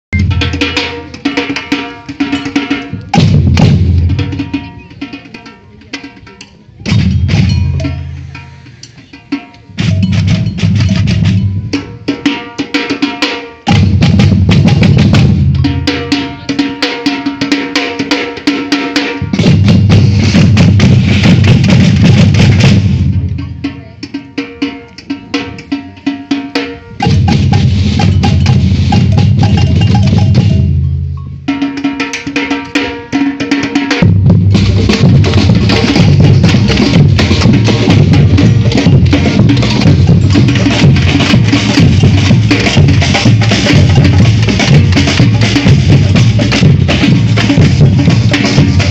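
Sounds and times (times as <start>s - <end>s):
snare drums: 0.1s - 30.8s, 31.5s - 48.9s
wood-block-like percussion: 0.1s - 48.9s
deep bass drums: 2.9s - 4.6s, 6.8s - 8.3s, 9.7s - 12.1s, 13.7s - 16.4s, 19.2s - 24.0s, 27.0s - 31.5s, 34.0s - 48.9s.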